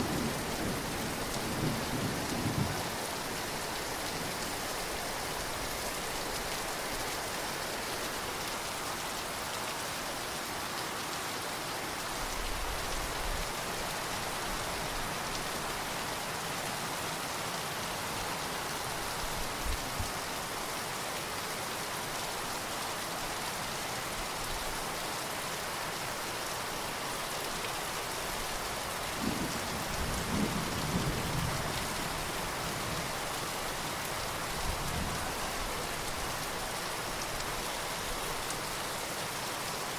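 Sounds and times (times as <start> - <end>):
distant thunder rumbling: 0.0 - 3.0, 29.2 - 31.9
heavy rain falling: 0.0 - 39.9.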